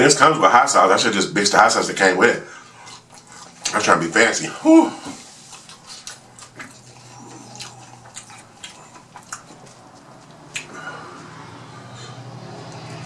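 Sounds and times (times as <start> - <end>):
chewing and mouth smacks: 2.8 - 3.9, 5.5 - 11.3.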